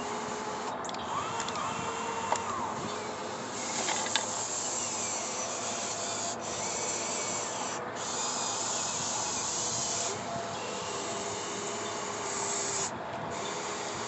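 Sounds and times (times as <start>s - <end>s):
toy excavator motor whirring: 0.0s - 14.0s
sharp clicks: 0.7s - 2.7s.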